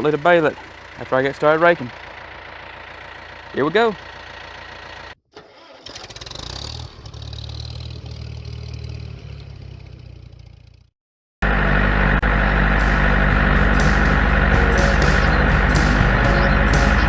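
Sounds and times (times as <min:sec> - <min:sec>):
tractor engine running: 0:00.0 - 0:05.8, 0:11.4 - 0:17.0.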